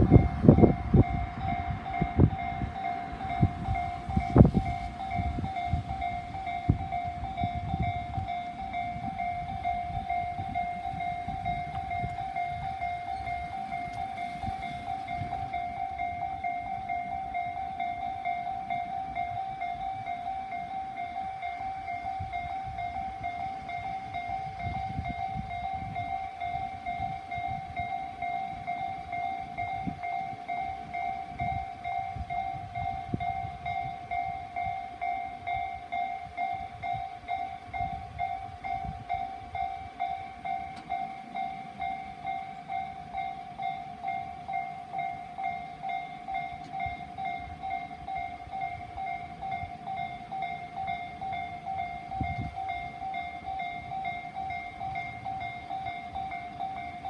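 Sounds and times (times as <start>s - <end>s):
level crossing warning bell: 0.0s - 57.0s.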